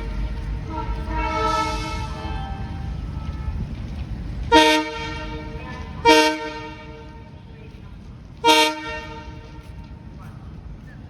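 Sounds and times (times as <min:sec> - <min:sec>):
diesel locomotive horn toots: 0:00.0 - 0:03.8, 0:04.5 - 0:07.4, 0:08.4 - 0:09.9.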